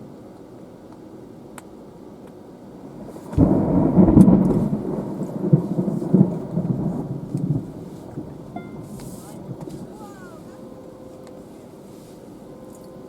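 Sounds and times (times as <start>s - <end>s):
steady background hiss: 0.0s - 13.0s
thunder rumbling: 2.9s - 11.0s.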